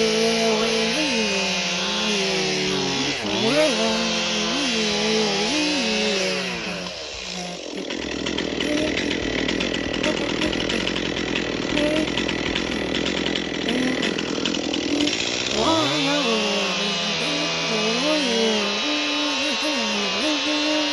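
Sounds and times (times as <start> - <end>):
chainsaw cutting through wood: 0.0 - 20.9.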